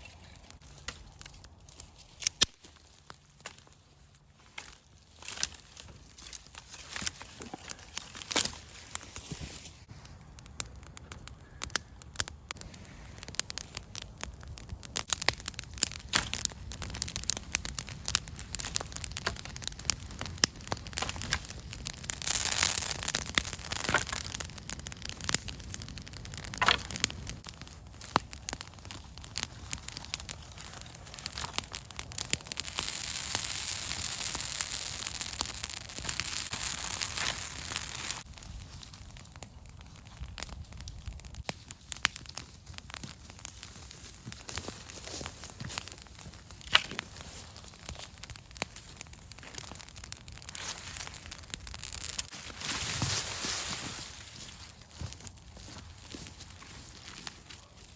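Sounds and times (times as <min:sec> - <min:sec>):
brush fire crackling and popping: 0:00.0 - 0:57.9
fire hiss: 0:15.0 - 0:38.9, 0:43.9 - 0:55.7.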